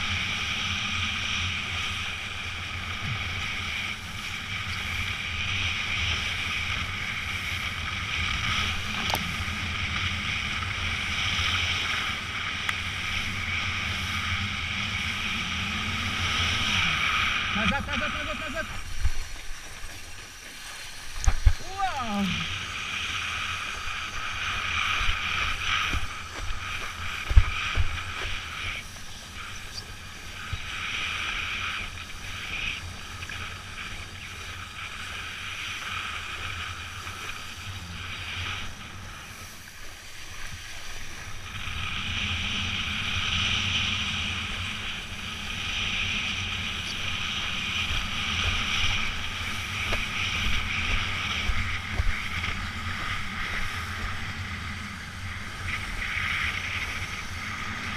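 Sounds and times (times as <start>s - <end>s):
rushing splashing water: 0.0s - 57.9s
wind buffeting microphone: 0.0s - 57.9s.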